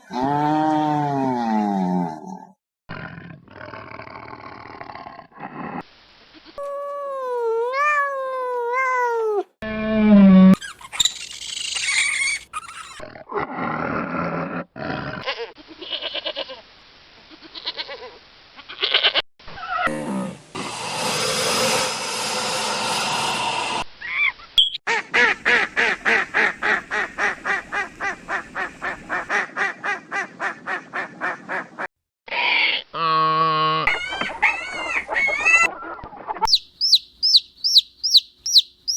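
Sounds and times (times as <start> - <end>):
animal calls: 10.5 - 13.0, 32.3 - 38.9.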